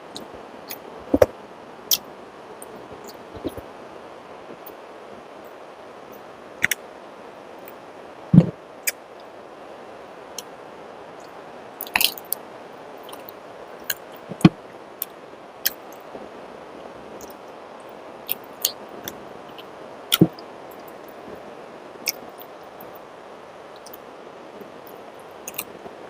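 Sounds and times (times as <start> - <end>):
steady background hiss: 0.0 - 26.0
mouth clicks and smacks chewing: 3.0 - 3.6.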